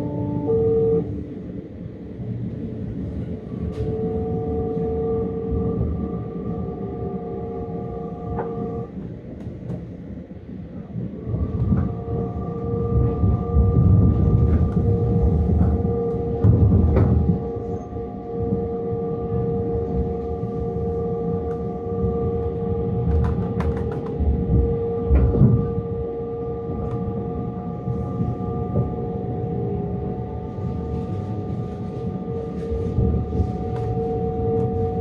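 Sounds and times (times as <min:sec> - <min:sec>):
electric train whining tones: 0:00.0 - 0:09.9, 0:10.9 - 0:35.0
train wheels rumbling on rail: 0:00.0 - 0:35.0.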